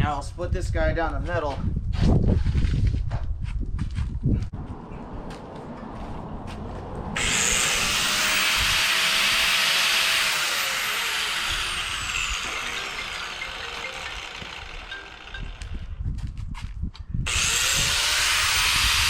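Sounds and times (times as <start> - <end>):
electric cutting tool whining: 7.2 - 16.0, 17.3 - 19.0.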